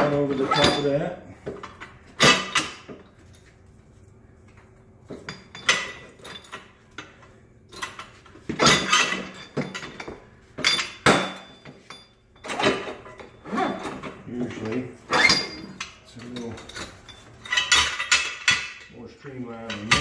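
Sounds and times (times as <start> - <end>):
metal parts clinking and knocking: 5.1 - 18.9, 19.6 - 20.0.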